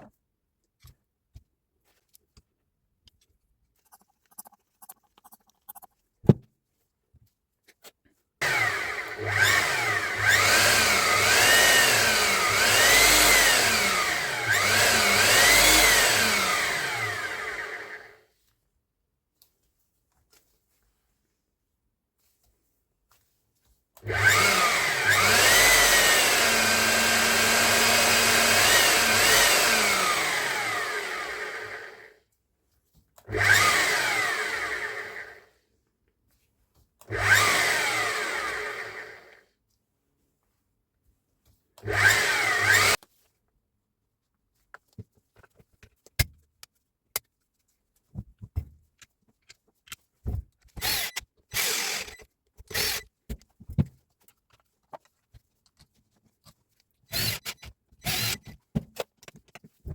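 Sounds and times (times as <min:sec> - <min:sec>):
rotary hammer running: 0:08.4 - 0:18.0, 0:24.1 - 0:31.9, 0:50.8 - 0:53.0, 0:57.1 - 0:58.6.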